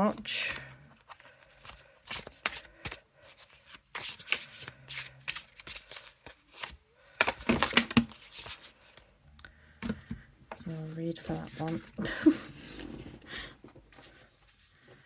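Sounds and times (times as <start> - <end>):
cards being shuffled: 0.1 - 9.0, 11.2 - 13.1.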